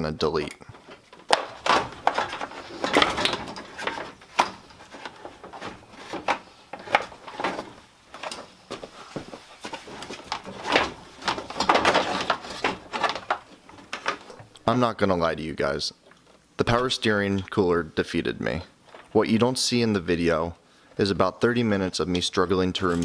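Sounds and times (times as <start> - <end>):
hand tools and car parts rattling: 0.4 - 14.6, 22.7 - 23.0.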